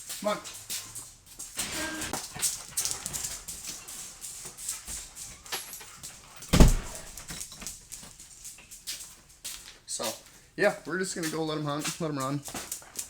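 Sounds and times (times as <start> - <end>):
dogs scuffling and clicking: 0.0 - 13.0
heavy thump: 6.5 - 7.3.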